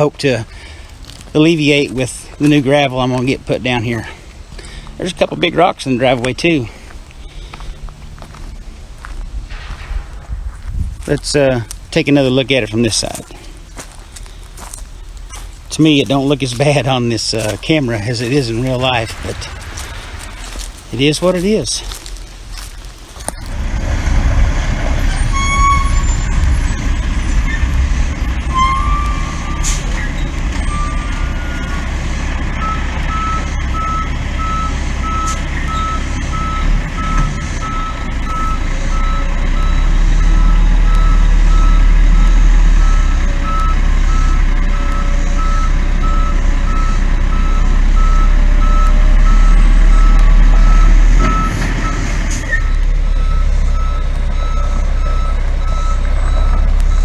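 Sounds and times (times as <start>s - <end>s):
truck diesel engine running: 11.0s - 57.0s
reversing alarm beeping: 25.1s - 57.0s.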